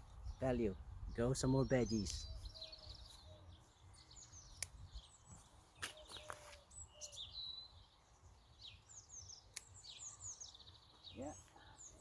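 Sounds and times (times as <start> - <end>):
wind on microphone: 0.0 - 3.0
small birds chirping: 0.0 - 12.0.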